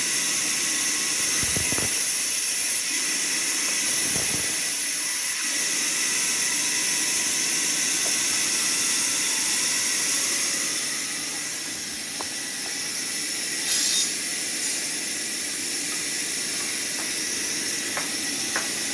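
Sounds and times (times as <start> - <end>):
band saw blade hissing through wood: 12.7 - 18.9.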